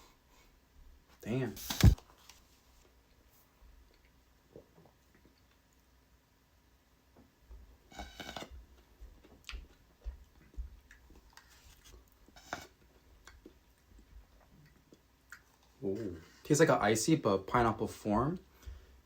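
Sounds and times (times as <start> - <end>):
person sipping a drink: 11.4 - 12.8.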